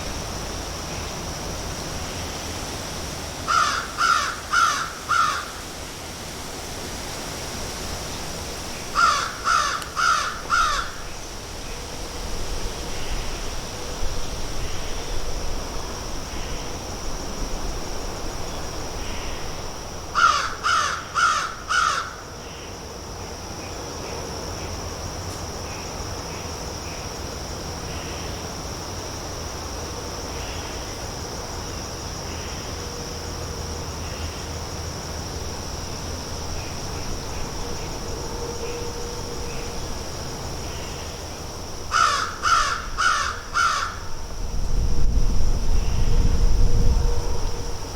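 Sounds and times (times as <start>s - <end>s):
crows cawing: 3.5s - 5.6s, 9.0s - 11.0s, 20.2s - 22.2s, 41.9s - 44.1s
high-pitched insect drone: 29.2s - 47.9s.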